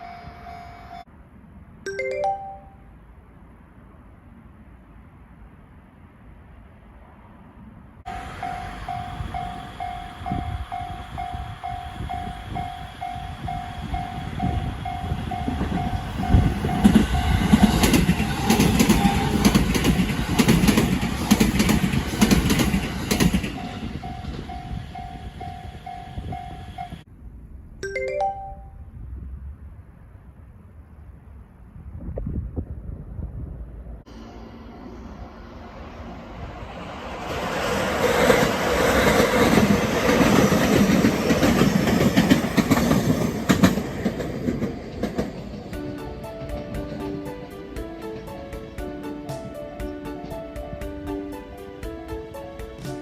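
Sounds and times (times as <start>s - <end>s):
crossing warning bell dinging: 0.0s - 1.1s, 1.9s - 2.9s, 8.1s - 27.1s, 27.8s - 28.8s
train wheels clattering: 8.4s - 27.0s, 37.8s - 51.0s.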